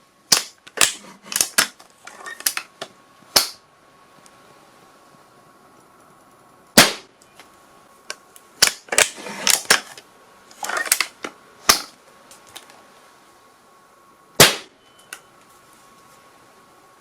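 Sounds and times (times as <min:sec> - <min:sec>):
gunshots: 0:06.8 - 0:07.1, 0:14.4 - 0:14.7.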